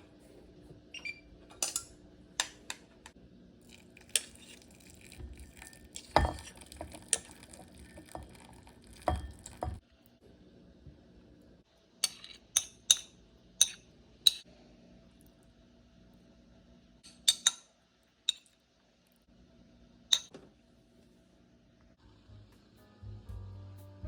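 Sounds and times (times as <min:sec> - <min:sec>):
faint steady hum: 0:00.0 - 0:23.8
utensils clinking against dishes: 0:01.6 - 0:02.0.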